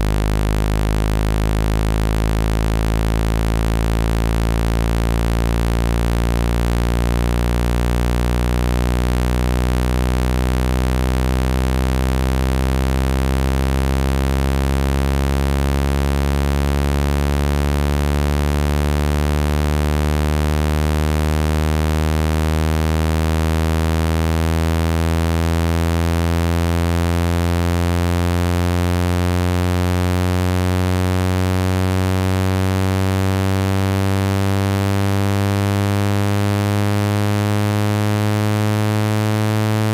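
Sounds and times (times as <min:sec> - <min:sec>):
synthetic buzzing tone rising in pitch: 0:00.0 - 0:39.9.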